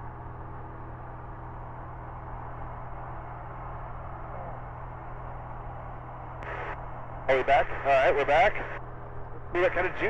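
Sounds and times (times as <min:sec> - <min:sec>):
airplane engine and propeller drone: 0:00.0 - 0:10.0.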